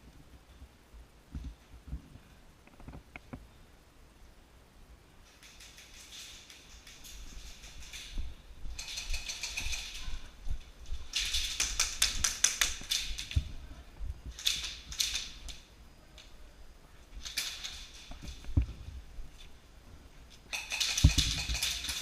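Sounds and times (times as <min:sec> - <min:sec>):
airsoft guns firing bursts: 0:20.5 - 0:22.0.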